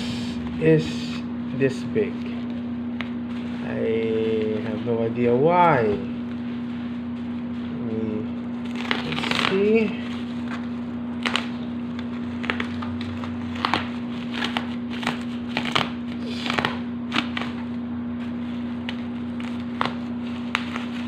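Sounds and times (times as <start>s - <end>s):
steady hum: 0.0s - 21.0s
packing crinkling and tearing: 6.3s - 21.0s.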